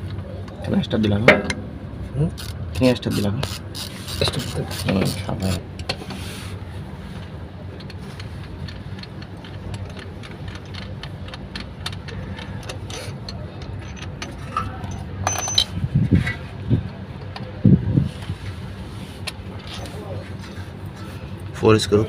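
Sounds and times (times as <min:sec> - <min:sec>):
low hum: 0:01.2 - 0:02.8.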